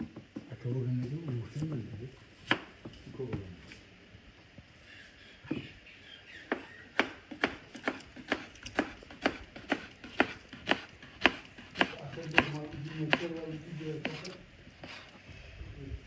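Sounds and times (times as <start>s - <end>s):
knife chopping on cutting board: 2.4s - 2.8s, 6.5s - 15.0s.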